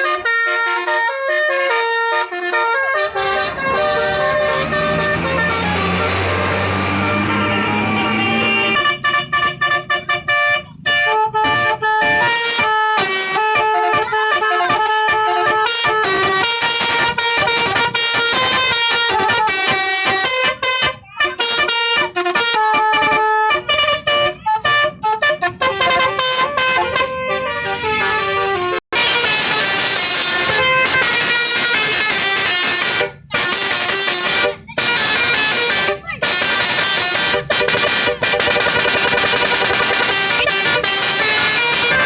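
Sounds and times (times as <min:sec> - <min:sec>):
musical bus horn tooting: 0:00.0 - 0:42.0.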